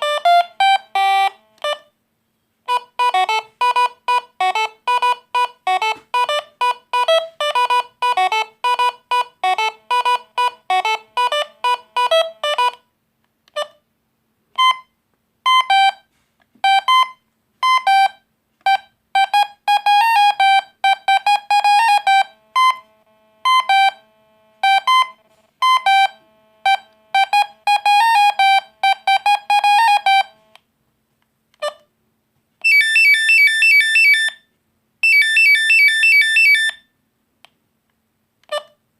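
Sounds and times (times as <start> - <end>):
monophonic phone ringtones: 2.7 - 12.8, 18.7 - 30.4, 32.6 - 34.4, 35.0 - 36.8.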